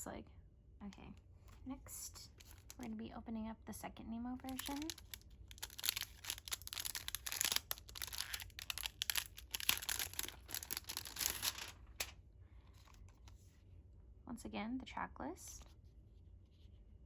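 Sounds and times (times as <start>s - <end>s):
plastic wrap tearing and crinkling: 2.4s - 2.8s, 4.5s - 12.1s.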